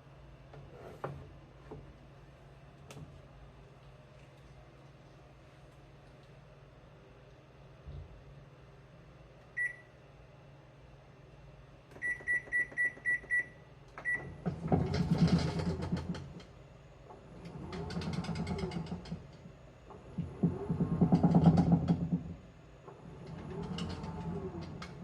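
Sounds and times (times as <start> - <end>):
control panel beeps: 9.6 - 9.8, 12.0 - 14.2
washing machine motor whining: 14.0 - 16.5, 17.1 - 25.0
washing machine rattle: 14.0 - 16.5, 17.2 - 25.0.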